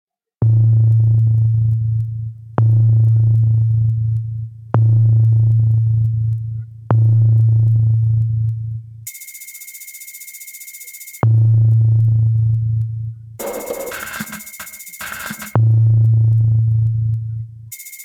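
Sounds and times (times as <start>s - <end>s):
pulsing synthesized humming tone: 13.4s - 15.5s.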